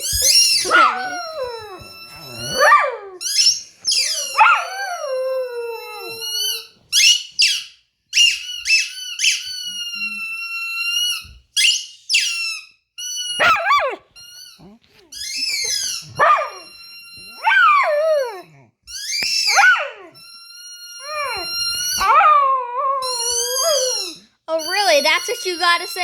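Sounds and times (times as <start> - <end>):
dog howling: 0.0 - 6.6, 13.4 - 14.0, 15.4 - 18.6, 19.5 - 20.2, 21.0 - 26.0.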